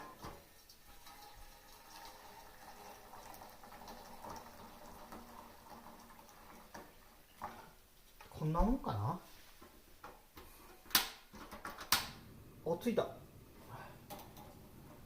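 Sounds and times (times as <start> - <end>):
water pouring into a pot: 0.0 - 8.5.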